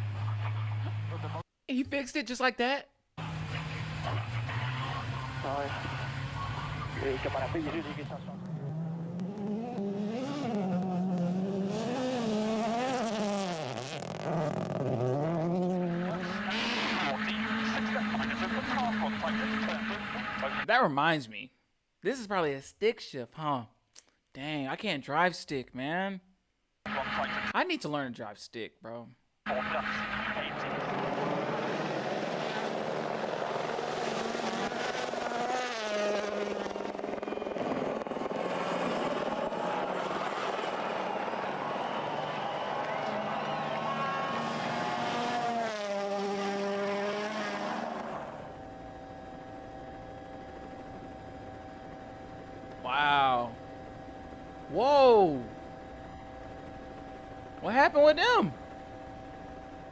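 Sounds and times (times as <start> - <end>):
rally car engine revving: 3.2 - 20.6, 29.6 - 48.6.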